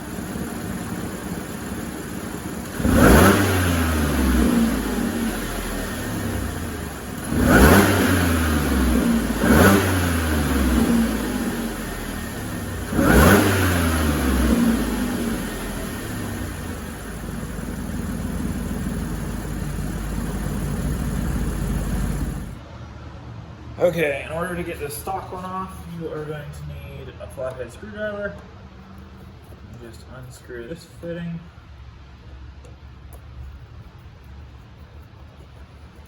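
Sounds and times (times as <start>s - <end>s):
car engine revving: 0.0s - 22.6s.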